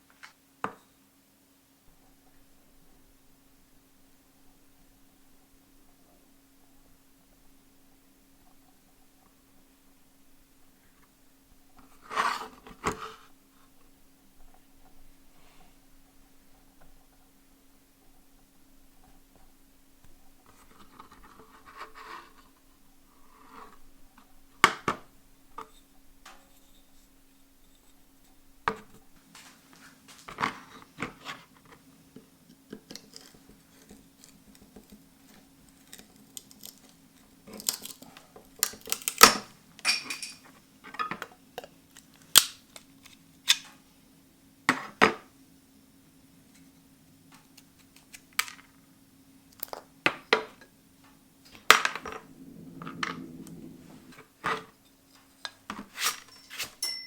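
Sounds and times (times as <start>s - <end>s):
faint low hum: 0.0s - 57.0s
metal tools clinking: 39.9s - 40.4s, 56.1s - 57.0s.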